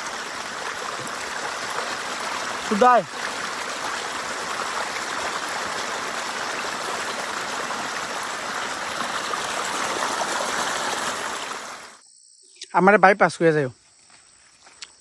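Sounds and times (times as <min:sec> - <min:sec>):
waterfall rushing: 0:00.0 - 0:12.0.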